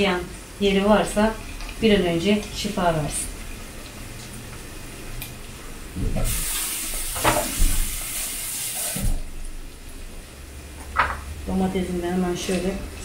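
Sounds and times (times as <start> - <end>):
food sizzling in hot oil: 6.2 - 9.7.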